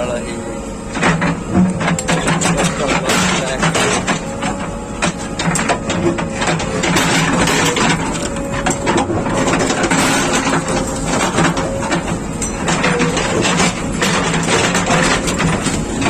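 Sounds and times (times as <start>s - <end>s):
diesel engine running under load: 0.0s - 16.0s
bucket knocking and scraping: 1.0s - 16.0s.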